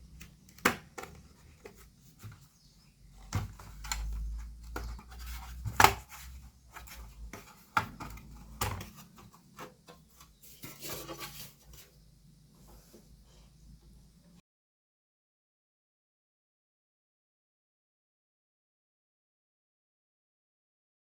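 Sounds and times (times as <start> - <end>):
laptop cover snapping and clicking: 0.2 - 1.3, 5.6 - 6.2
scraping and rubbing: 3.2 - 12.0.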